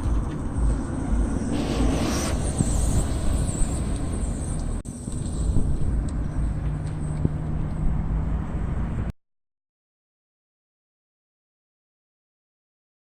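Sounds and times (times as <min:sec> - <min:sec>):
steady low hum: 0:00.0 - 0:06.6
car wheel low rumble: 0:00.0 - 0:09.1.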